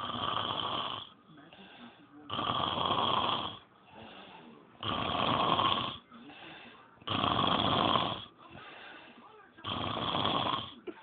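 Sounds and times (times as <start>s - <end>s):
man snoring: 0.0s - 1.2s, 2.3s - 3.6s, 4.8s - 6.1s, 7.0s - 8.3s, 9.6s - 10.8s
quiet breathing: 0.0s - 11.0s.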